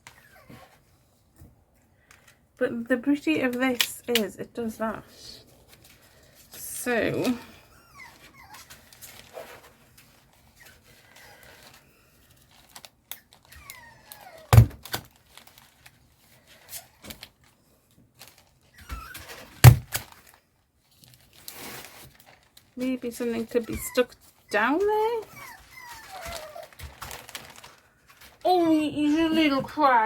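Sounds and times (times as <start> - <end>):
puppy whining: 0.0 - 1.0, 7.2 - 9.8, 10.4 - 14.8, 18.6 - 19.7, 23.2 - 27.6
paper handling: 25.7 - 29.6.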